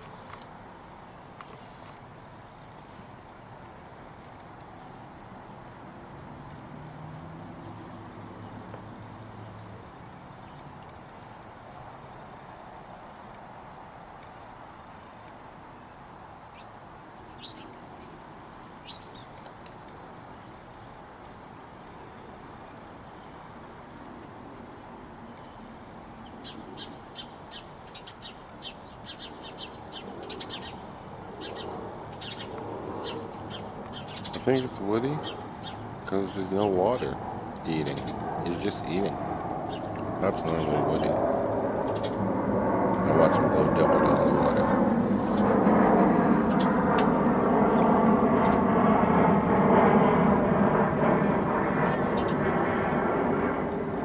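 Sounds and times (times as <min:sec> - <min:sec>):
small birds chirping: 0:15.8 - 0:24.0, 0:25.3 - 0:42.3, 0:43.0 - 0:48.8, 0:51.9 - 0:52.5
propeller aircraft engine drone: 0:16.5 - 0:54.0.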